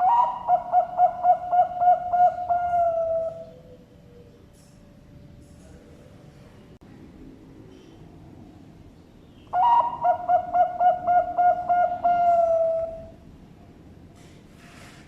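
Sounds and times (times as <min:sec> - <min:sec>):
dove cooing: 0:00.0 - 0:04.5, 0:09.5 - 0:13.2.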